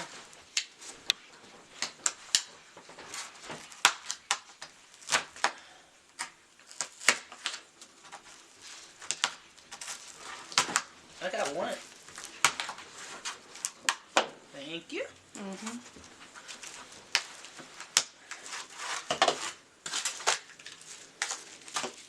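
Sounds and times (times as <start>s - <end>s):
packaging clicks and crinkles: 15.7s - 22.0s.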